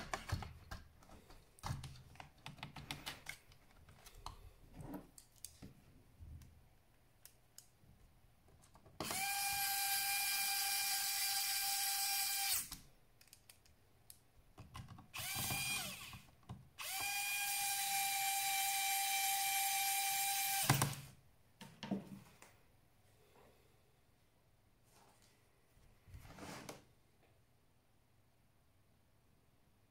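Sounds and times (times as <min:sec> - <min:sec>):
electric screwdriver whining: 0:09.0 - 0:12.8, 0:15.2 - 0:21.1.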